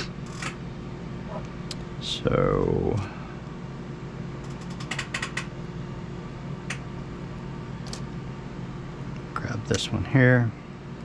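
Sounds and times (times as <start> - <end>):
steady low hum: 0.0 - 11.0
clicks and taps of plastic parts: 4.5 - 5.5.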